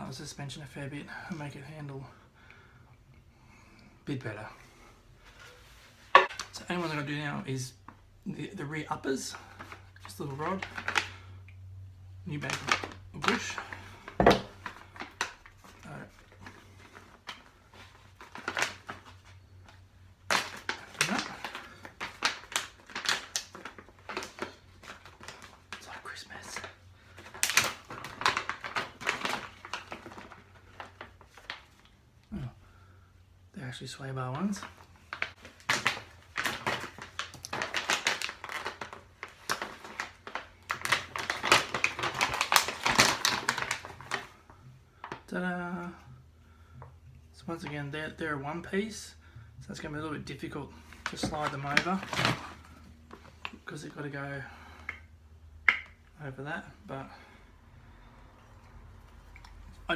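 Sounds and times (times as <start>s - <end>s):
plastic packaging rustling: 9.1s - 11.3s, 12.3s - 32.0s, 34.3s - 45.3s, 50.7s - 55.0s.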